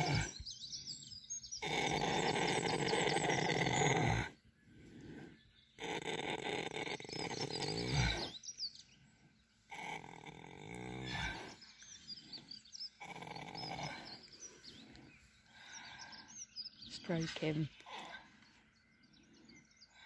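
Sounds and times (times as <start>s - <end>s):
horse snoring: 0.0s - 0.4s, 1.6s - 4.4s, 5.8s - 8.5s, 9.7s - 11.6s, 13.0s - 14.3s
birds chirping faintly: 0.0s - 20.0s.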